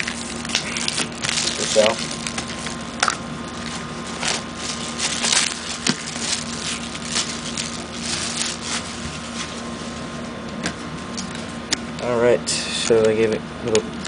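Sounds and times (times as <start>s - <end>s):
packaging rustling and crinkling: 0.0s - 10.2s
faint hum: 0.0s - 14.0s.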